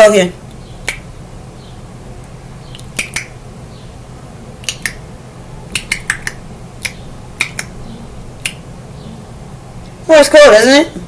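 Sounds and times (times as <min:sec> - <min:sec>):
tongue clicks: 0:00.8 - 0:01.1, 0:02.7 - 0:03.4, 0:04.6 - 0:05.0, 0:05.7 - 0:07.8, 0:08.4 - 0:08.6.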